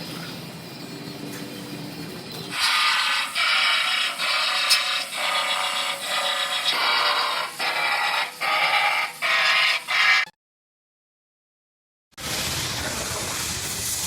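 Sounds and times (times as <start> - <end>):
power drill boring into steel: 2.5 - 10.3.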